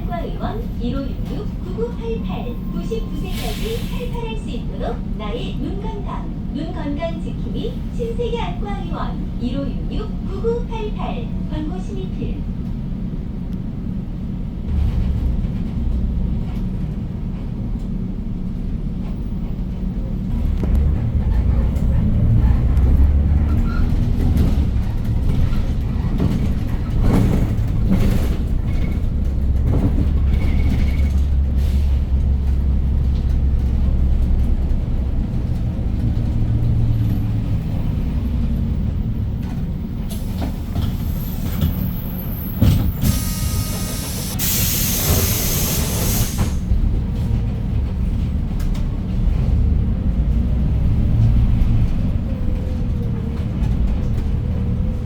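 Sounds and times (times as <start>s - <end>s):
bus engine running low: 0.0s - 55.0s
compressed air hissing: 43.0s - 46.7s.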